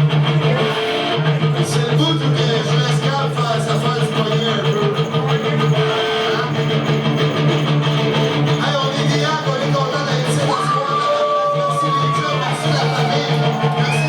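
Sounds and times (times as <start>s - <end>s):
bass: 0.0s - 14.0s
electric guitar: 0.0s - 14.0s.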